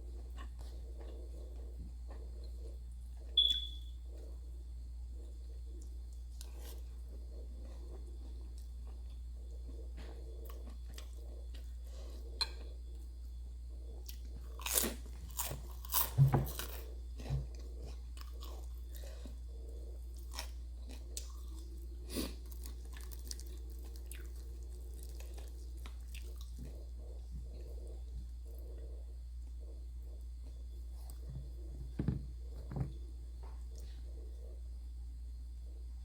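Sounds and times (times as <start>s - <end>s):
steady low hum: 0.0s - 36.0s
chewing crisp fried food: 5.1s - 31.4s.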